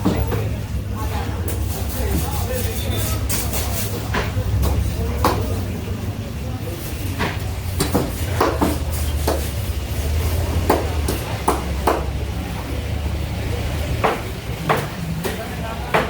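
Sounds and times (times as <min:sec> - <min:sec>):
knife chopping fish on block: 0:07.2 - 0:09.5, 0:10.6 - 0:12.1.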